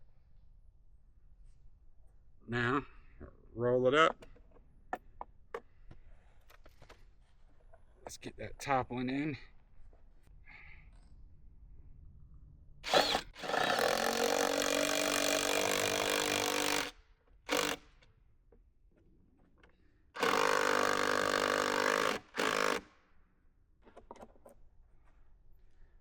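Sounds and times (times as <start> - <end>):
power driver running bolt into wood: 12.9 - 16.9, 17.5 - 17.9.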